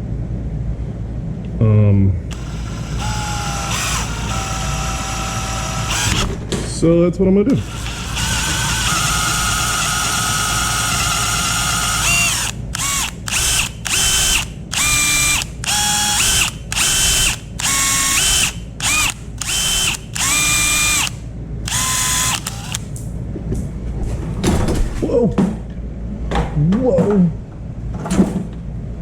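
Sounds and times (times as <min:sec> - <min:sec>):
power drill whine: 0:02.3 - 0:06.4, 0:07.6 - 0:22.8.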